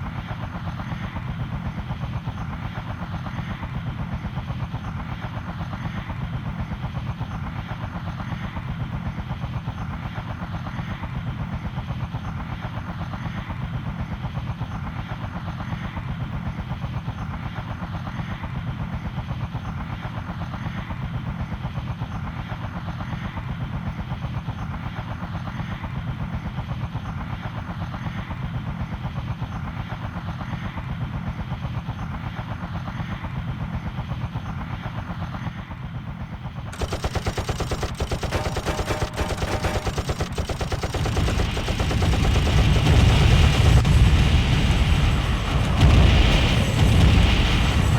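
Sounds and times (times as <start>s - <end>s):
helicopter rotor beating: 36.3s - 47.9s.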